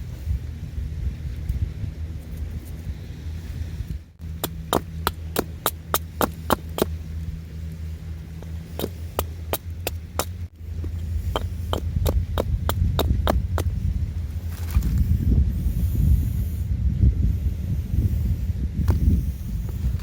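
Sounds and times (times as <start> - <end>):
steady low rumble: 0.0 - 20.0
hammer blows: 4.2 - 6.9.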